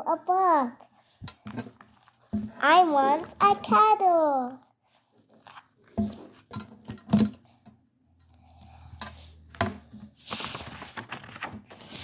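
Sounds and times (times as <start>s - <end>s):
knocks and clacks of handling: 5.4s - 10.0s.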